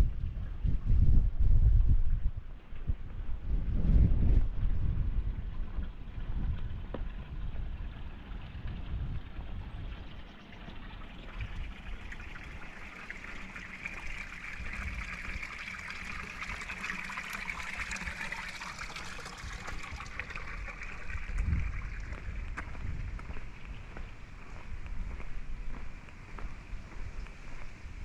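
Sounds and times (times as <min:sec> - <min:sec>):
wind rumble on microphone: 0:00.0 - 0:28.0
water trickling: 0:05.4 - 0:27.8.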